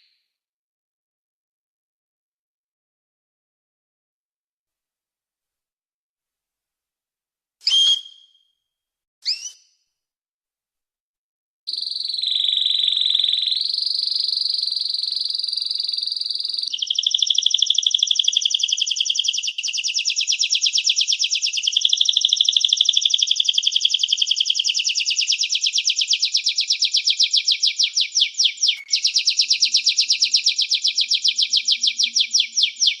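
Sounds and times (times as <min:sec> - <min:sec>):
songbird singing: 0:07.6 - 0:08.3, 0:11.7 - 0:33.0.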